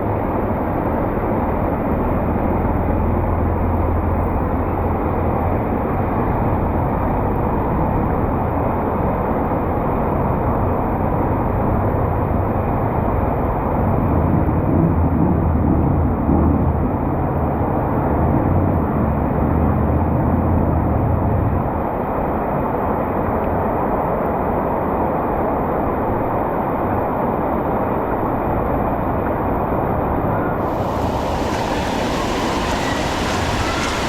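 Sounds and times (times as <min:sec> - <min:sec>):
heavy rain: 0:30.6 - 0:34.0
traffic on wet street: 0:30.6 - 0:34.0
vehicle engine rumble: 0:30.6 - 0:34.0.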